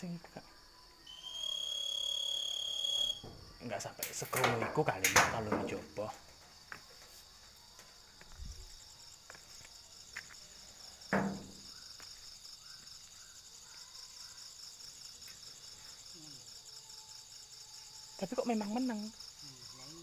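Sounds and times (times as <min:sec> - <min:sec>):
high-pitched insect trill: 0:00.0 - 0:20.0
loud knock: 0:11.1 - 0:11.7.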